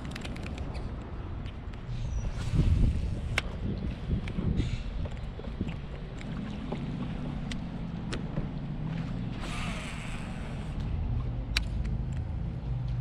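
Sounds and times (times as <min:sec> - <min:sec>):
wind on microphone: 0:00.0 - 0:08.3.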